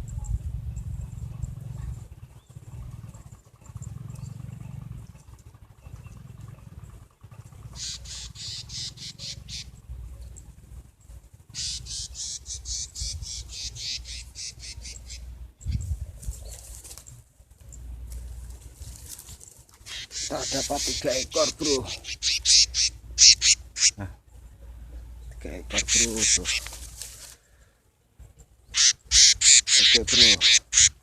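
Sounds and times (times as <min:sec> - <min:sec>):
bird high chirps: 0:07.6 - 0:10.5, 0:11.6 - 0:16.6, 0:19.8 - 0:24.0, 0:25.2 - 0:26.7, 0:28.6 - 0:31.0.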